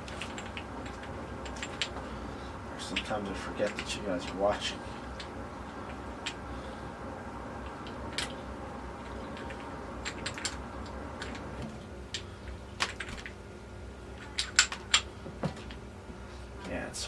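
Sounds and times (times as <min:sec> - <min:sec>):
steady low hum: 0:00.0 - 0:17.0
light clicks and taps of parts: 0:02.8 - 0:05.3.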